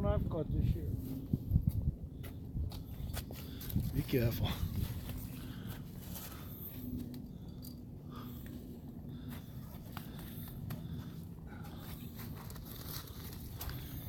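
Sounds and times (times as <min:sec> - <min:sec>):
wind rumbling on microphone: 0:00.0 - 0:05.6.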